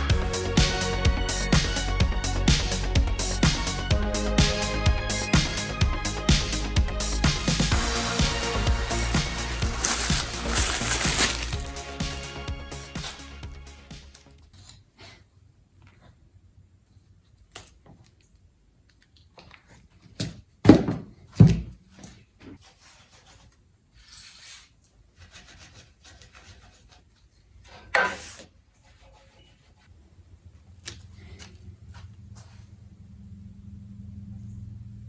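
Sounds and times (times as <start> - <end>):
rubbing and scraping: 0.0 - 14.7, 22.1 - 30.3.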